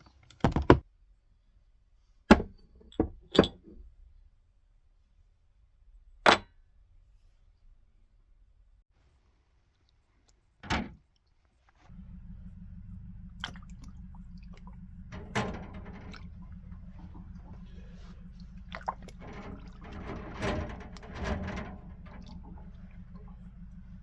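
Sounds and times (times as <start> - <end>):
parts knocking and clattering: 11.9 - 24.0
steady low hum: 11.9 - 24.0.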